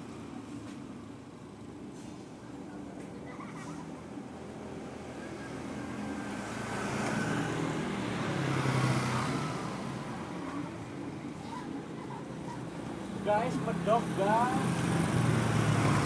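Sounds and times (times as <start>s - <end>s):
motor vehicle passing: 3.2s - 10.8s, 12.6s - 16.0s.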